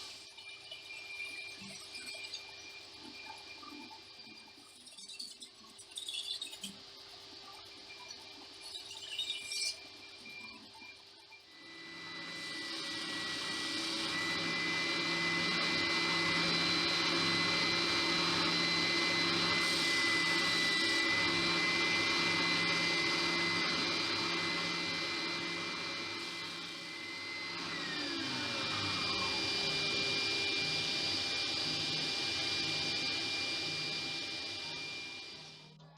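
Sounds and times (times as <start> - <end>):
electric motor whining: 11.6 - 35.8.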